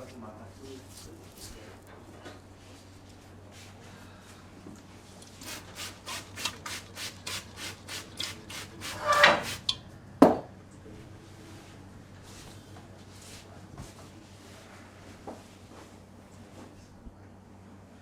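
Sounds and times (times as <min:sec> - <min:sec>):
hands rubbing hair and scalp: 0:05.4 - 0:09.7.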